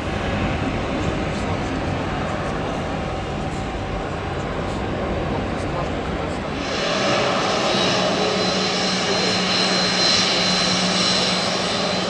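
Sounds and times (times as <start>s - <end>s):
jet engines running: 0.0s - 12.0s.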